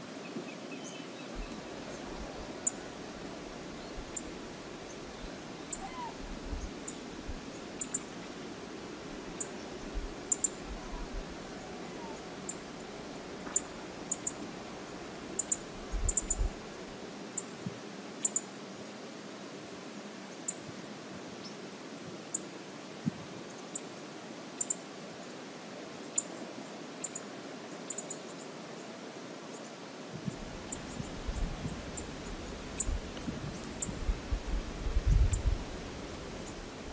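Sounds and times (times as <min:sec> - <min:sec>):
river water rushing: 0:01.1 - 0:15.9.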